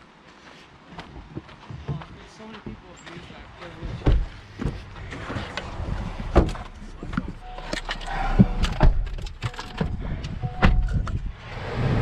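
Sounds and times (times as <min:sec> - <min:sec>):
low rumble: 0:04.4 - 0:12.0.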